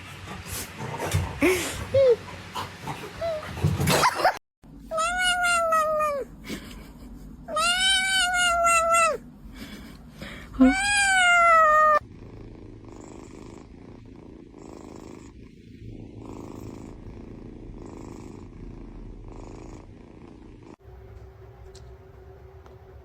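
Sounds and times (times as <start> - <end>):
cat meowing: 4.9 - 6.3, 7.5 - 9.2, 10.6 - 12.0
cat purring: 11.8 - 20.8.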